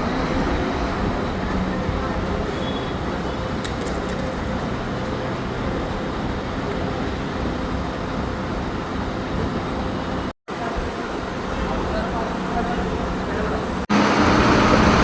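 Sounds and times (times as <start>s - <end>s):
heavy machinery engine rumble: 11.0s - 15.0s.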